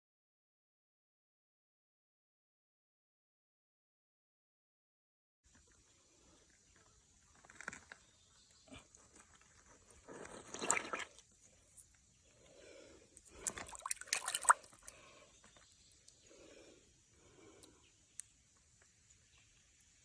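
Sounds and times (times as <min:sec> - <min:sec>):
creek water splashing: 0:13.3 - 0:15.2.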